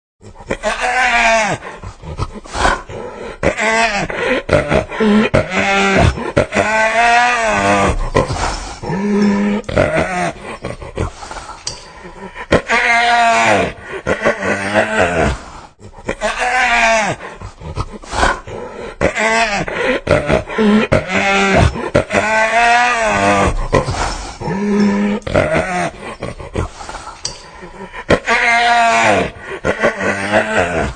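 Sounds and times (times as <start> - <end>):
hyena laughing: 0.3 - 30.9.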